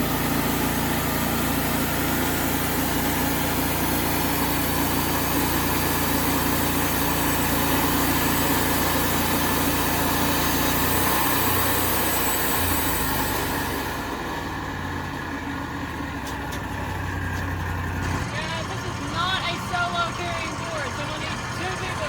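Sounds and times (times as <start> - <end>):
sawmill engine under load: 0.0 - 22.0
band blade sawing through log: 0.3 - 14.0.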